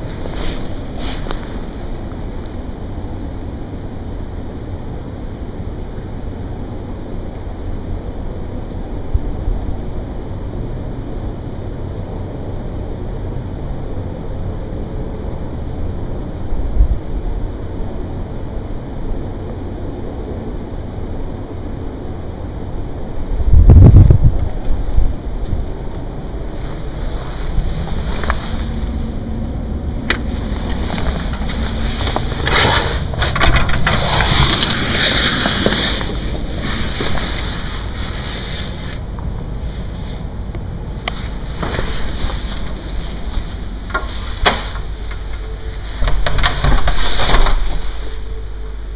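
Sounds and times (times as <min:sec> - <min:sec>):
deep rumble from the sky: 0:00.0 - 0:48.9
rushing hiss: 0:30.2 - 0:46.1.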